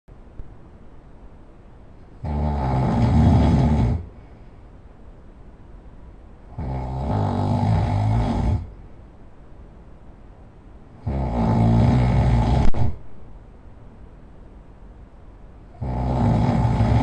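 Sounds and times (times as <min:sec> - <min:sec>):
person snoring: 0:02.2 - 0:04.2, 0:06.5 - 0:08.7, 0:11.0 - 0:13.0, 0:15.7 - 0:17.0.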